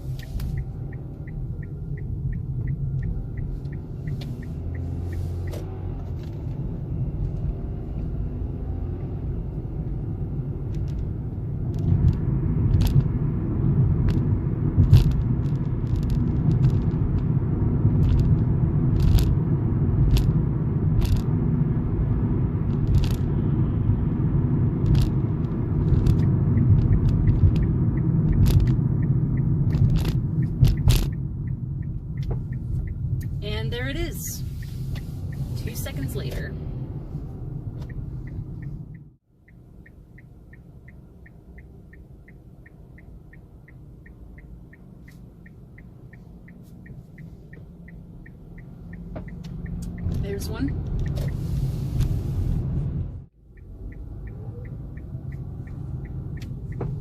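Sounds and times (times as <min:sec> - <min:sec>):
low road rumble in car cabin: 0:00.0 - 0:57.0
sharp clicks and knocks: 0:21.0 - 0:21.3, 0:24.8 - 0:29.1, 0:29.7 - 0:33.3, 0:54.2 - 0:57.0
light ticking: 0:37.9 - 0:51.4, 0:53.5 - 0:57.0.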